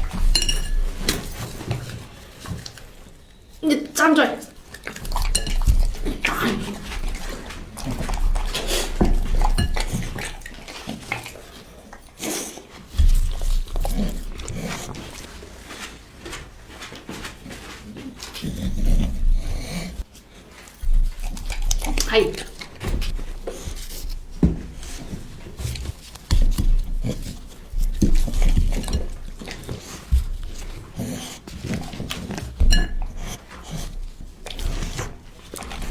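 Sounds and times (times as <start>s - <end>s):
bowl clicking and knocking: 0.0s - 3.0s, 4.7s - 10.6s, 32.6s - 33.3s
puppy chewing meat: 0.0s - 3.6s, 4.4s - 15.8s, 16.5s - 35.9s.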